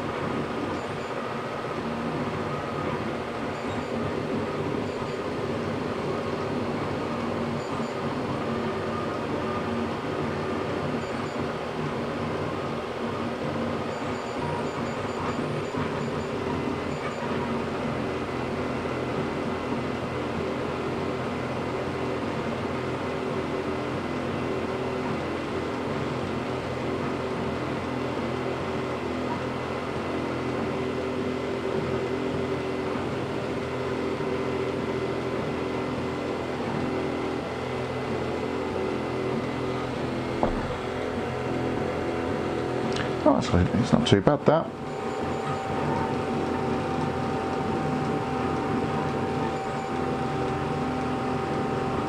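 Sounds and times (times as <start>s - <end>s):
fan hum: 0.0s - 52.0s
stepper motors whining: 44.7s - 52.0s.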